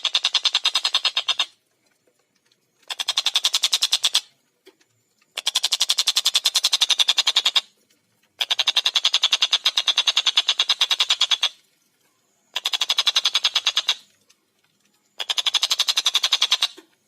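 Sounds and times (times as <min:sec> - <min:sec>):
kingfisher rattling calls: 0:00.0 - 0:01.6, 0:02.8 - 0:04.3, 0:05.3 - 0:07.7, 0:08.4 - 0:11.6, 0:12.5 - 0:14.1, 0:15.1 - 0:16.8.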